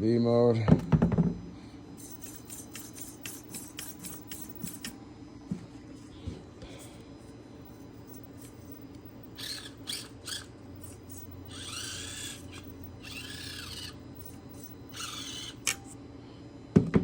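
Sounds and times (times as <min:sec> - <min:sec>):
small electric motor whining: 0:02.0 - 0:05.0, 0:06.8 - 0:16.0.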